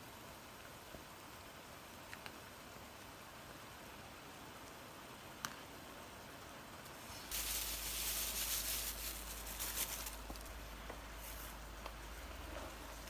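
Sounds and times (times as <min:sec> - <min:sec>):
food sizzling in a pan: 0:07.0 - 0:10.4.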